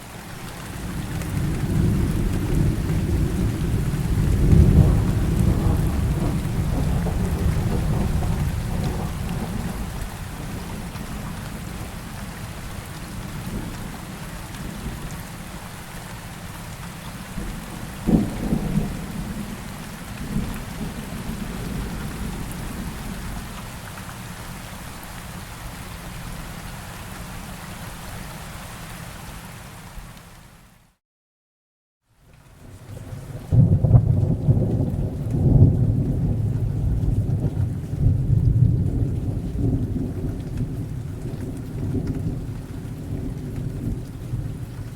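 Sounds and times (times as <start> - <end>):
heavy rain: 0.0 - 31.0, 32.1 - 44.9
thunder rumbling and clapping: 0.7 - 15.2, 17.3 - 23.7, 32.8 - 44.9.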